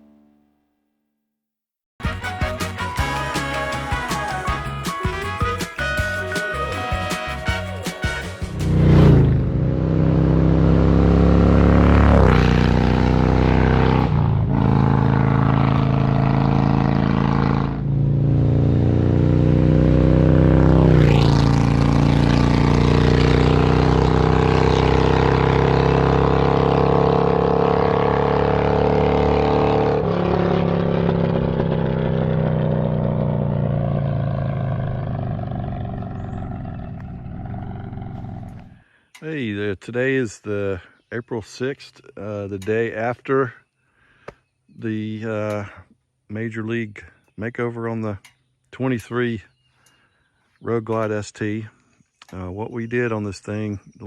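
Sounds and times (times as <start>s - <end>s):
motorcycle engine accelerating: 2.8s - 38.8s.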